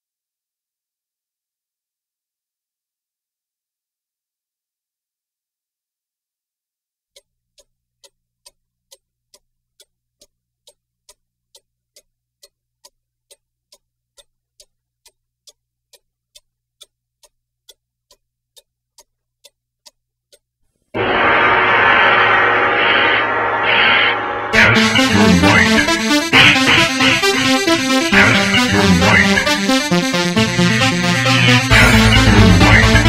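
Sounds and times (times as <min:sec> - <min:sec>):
clock ticking: 0:07.2 - 0:20.5, 0:24.6 - 0:33.0
loud music: 0:21.0 - 0:33.0.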